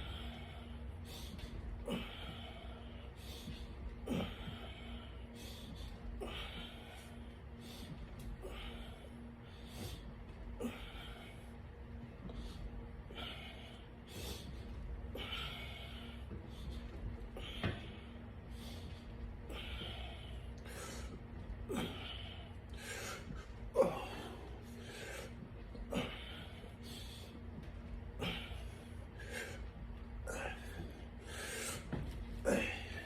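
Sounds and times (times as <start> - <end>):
faint steady hum: 0.0 - 33.0
person breathing hard: 0.0 - 33.0.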